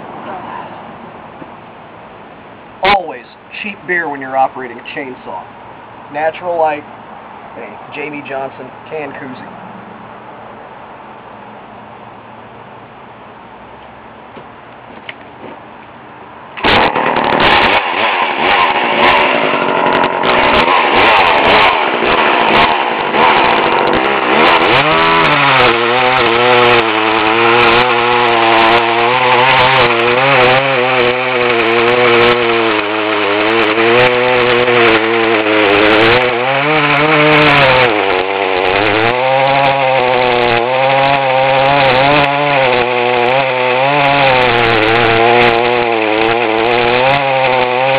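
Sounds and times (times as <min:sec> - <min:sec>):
chainsaw cutting a log: 0:16.6 - 0:47.9.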